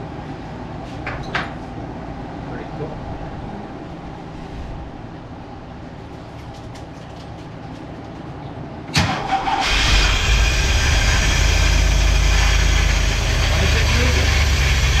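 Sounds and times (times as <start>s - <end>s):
v eight engine starting and running: 8.9s - 15.0s.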